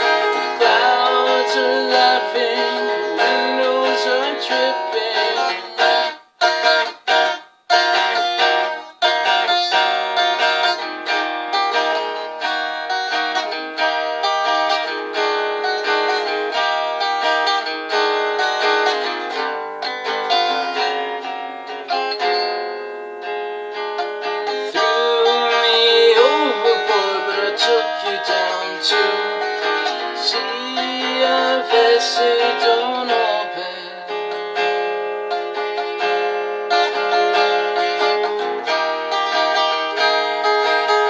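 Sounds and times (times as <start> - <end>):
guitar strummed and picked: 0.0 - 41.0.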